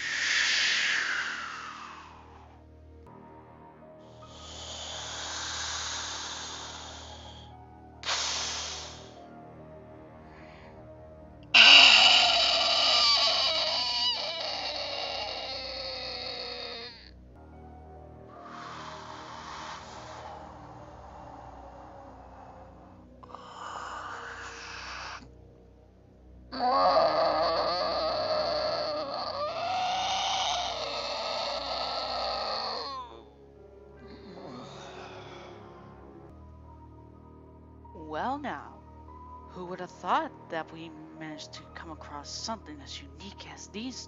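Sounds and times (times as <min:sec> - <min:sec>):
loud animal-like creature cry: 0:00.0 - 0:02.5, 0:11.5 - 0:17.2, 0:23.2 - 0:25.3, 0:26.5 - 0:33.4.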